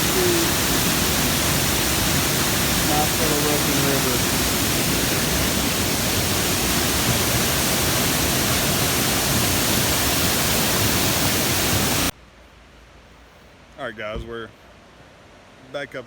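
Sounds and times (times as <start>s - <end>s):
waterfall and river rushing: 0.0s - 12.1s.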